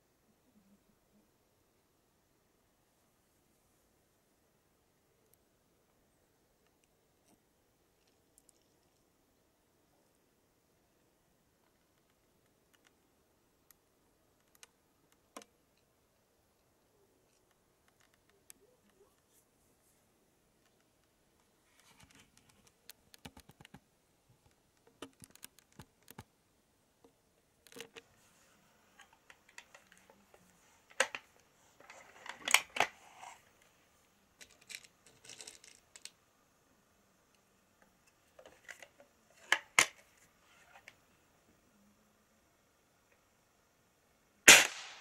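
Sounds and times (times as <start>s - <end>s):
air rifle clicks: 44.5s - 45.0s.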